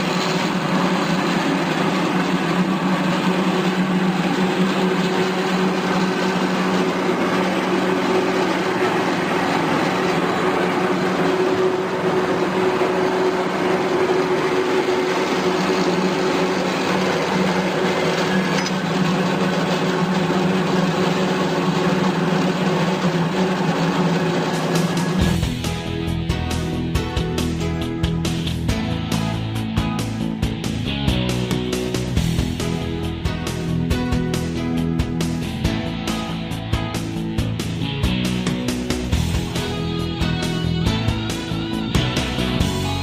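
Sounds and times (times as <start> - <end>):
bandsaw blade whir: 0.0 - 26.8
bandsaw motor hum: 0.0 - 43.0.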